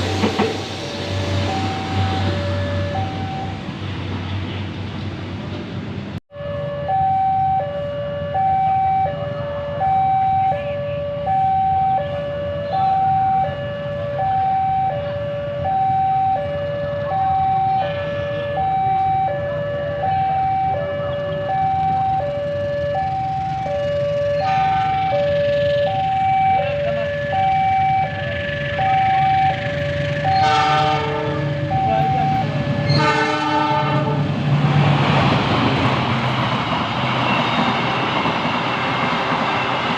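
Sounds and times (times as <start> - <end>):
two-tone level crossing alarm: 1.4 - 3.7, 6.3 - 33.9.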